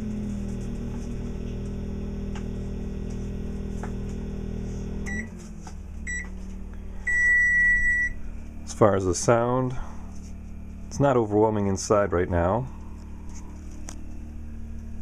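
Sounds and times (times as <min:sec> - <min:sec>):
microwave oven humming: 0:00.0 - 0:15.0
microwave beeps: 0:05.0 - 0:05.4, 0:06.0 - 0:06.4, 0:07.0 - 0:08.2.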